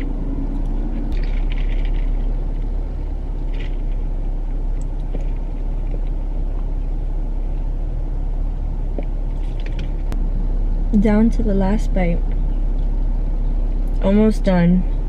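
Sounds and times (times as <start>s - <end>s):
car idling from inside: 0.0s - 15.0s.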